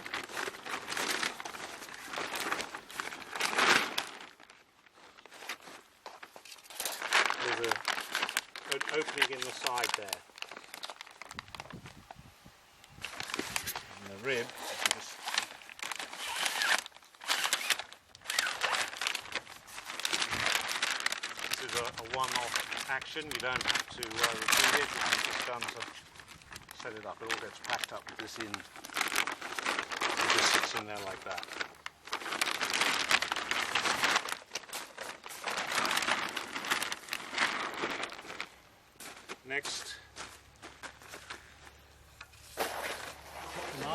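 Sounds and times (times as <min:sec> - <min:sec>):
sail cloth crinkling: 0:00.0 - 0:43.9.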